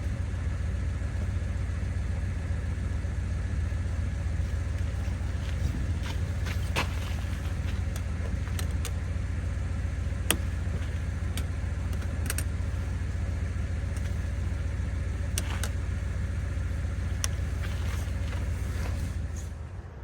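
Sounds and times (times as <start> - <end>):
vehicle road noise rumble: 0.0 - 20.0
small clicks and rattles: 4.5 - 9.1, 10.1 - 14.6, 15.2 - 19.0.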